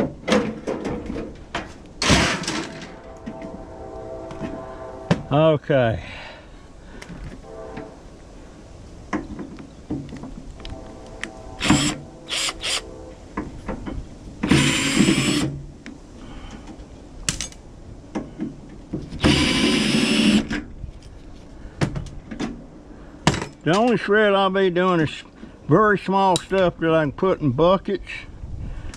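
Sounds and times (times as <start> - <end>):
clicks and metal clanks of parts: 0.0 - 3.6, 15.8 - 19.2, 23.3 - 24.0
power drill whirring: 11.6 - 12.9, 14.5 - 15.5, 19.2 - 20.5.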